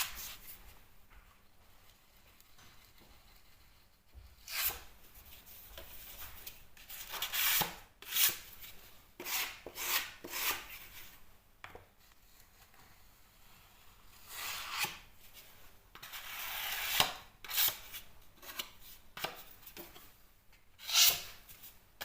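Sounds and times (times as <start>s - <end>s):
hand tool scraping plaster wall: 1.9s - 6.2s, 6.8s - 11.2s, 12.2s - 20.0s, 20.8s - 21.6s.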